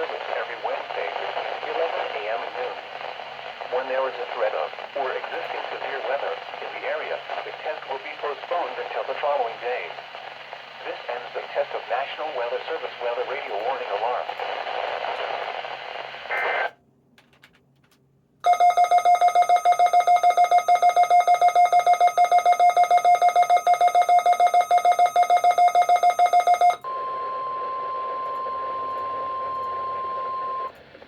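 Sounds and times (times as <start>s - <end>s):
radio static: 0.0s - 16.8s
steady warning alarm tone: 18.4s - 30.7s
electronic alarm beeping rapidly: 18.5s - 26.8s.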